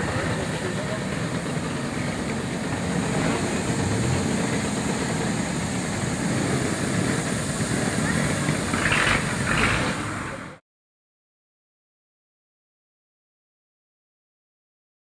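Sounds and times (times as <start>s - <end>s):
people talking: 0.0s - 10.6s
steam road roller running: 0.0s - 10.6s.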